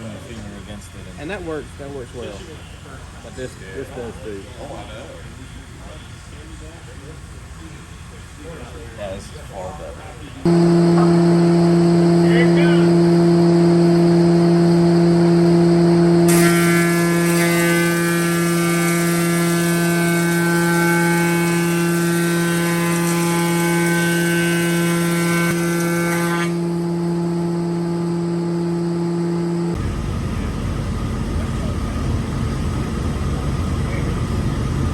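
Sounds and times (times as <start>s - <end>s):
planer machine hum: 10.5s - 34.9s.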